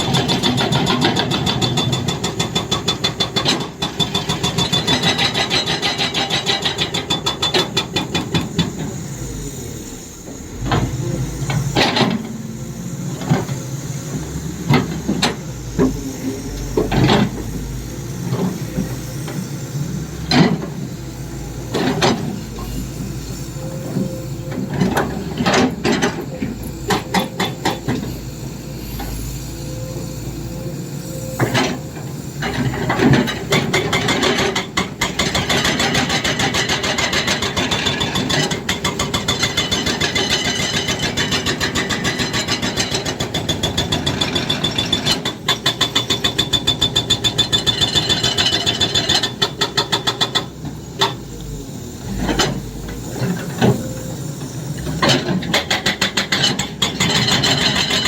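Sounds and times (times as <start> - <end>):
hydraulic rock breaker hammering: 0.0 - 9.0, 23.9 - 28.1, 32.4 - 53.9, 54.7 - 58.0
excavator engine running: 0.0 - 58.0.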